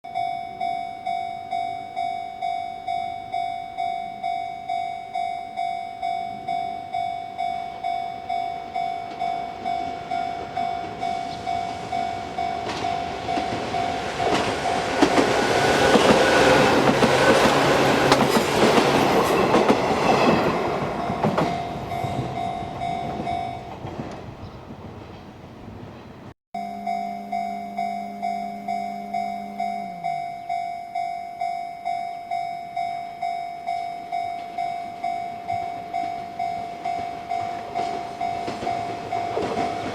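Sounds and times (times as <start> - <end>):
level-crossing bell ringing: 0.0 - 23.8, 26.6 - 39.9
electric train passing: 0.2 - 39.9
train wheels clicking on rail joints: 6.3 - 26.3, 34.1 - 39.9.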